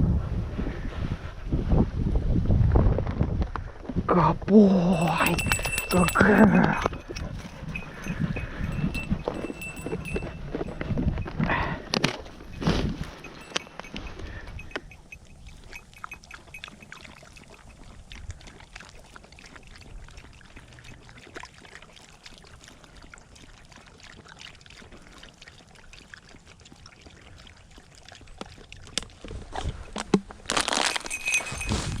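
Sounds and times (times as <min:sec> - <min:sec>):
wind gusts buffeting microphone: 0:00.0 - 0:04.1, 0:04.9 - 0:15.8
dry vegetation rustling: 0:30.3 - 0:32.0.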